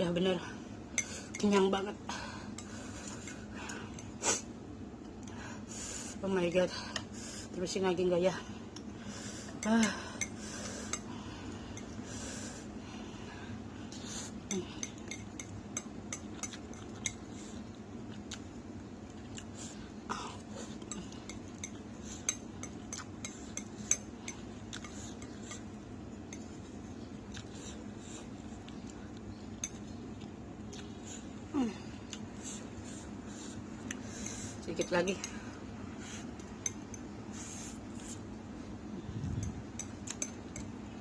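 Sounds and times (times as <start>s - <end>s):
steady low hum: 0.0s - 41.0s
cutlery clinking against bowl: 14.8s - 17.2s.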